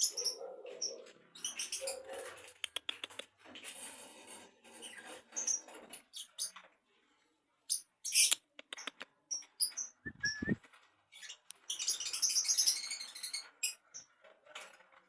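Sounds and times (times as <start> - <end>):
short squeak: 9.7 - 10.6.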